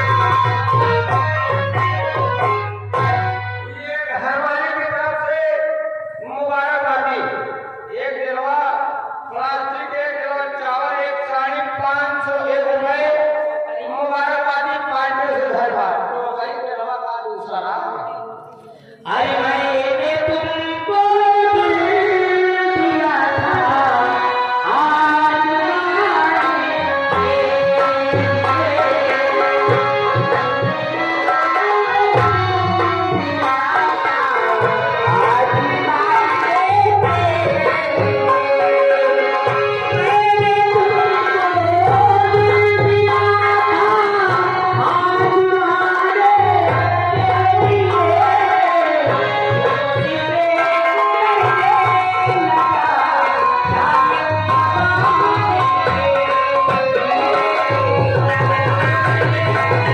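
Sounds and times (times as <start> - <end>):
person singing: 18.1 - 59.9.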